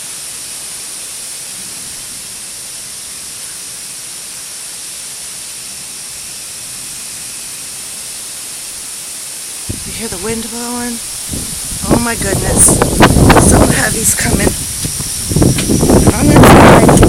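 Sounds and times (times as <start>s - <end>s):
wind blowing: 1.1s - 17.0s.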